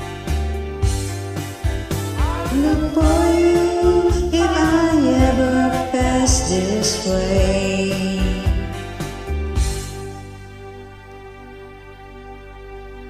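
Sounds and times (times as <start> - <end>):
karaoke backing track: 0.0 - 13.0
person singing long notes: 2.2 - 8.7.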